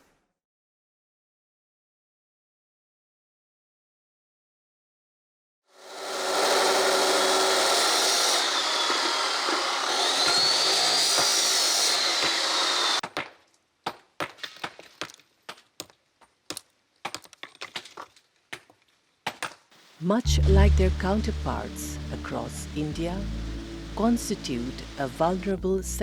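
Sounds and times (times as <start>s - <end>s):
power tool cutting: 5.8s - 13.0s, 21.0s - 25.6s.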